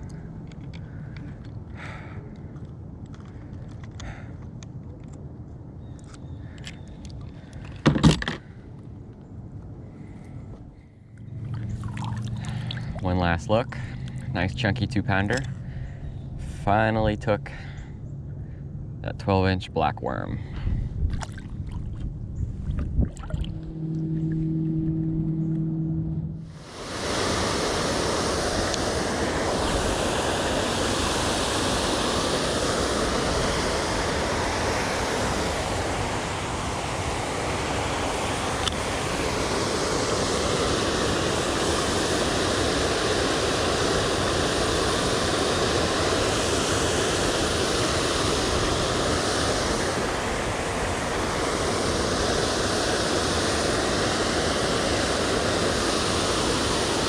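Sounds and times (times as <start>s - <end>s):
loud rushing noise: 23.4s - 57.0s.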